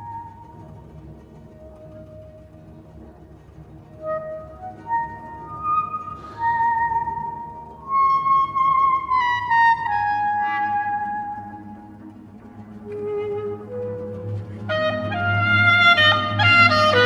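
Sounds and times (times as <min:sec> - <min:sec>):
soft low sustained accompaniment: 0:00.0 - 0:17.0
solo clarinet melody: 0:04.0 - 0:17.0.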